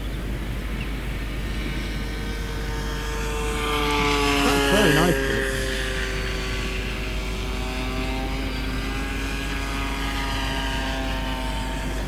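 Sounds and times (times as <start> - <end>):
electric motor and propeller whine: 6.4 - 12.0.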